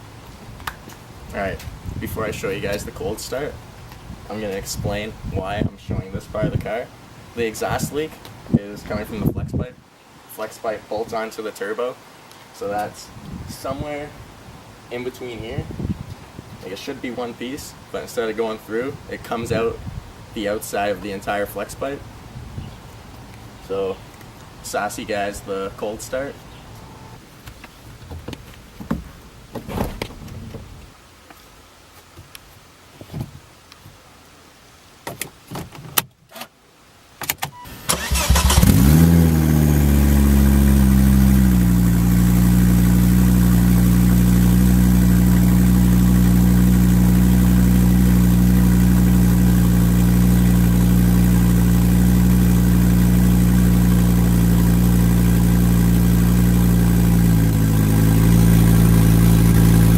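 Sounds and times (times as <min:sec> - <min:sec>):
car engine starting and idling loudly: 0:37.7 - 0:59.9.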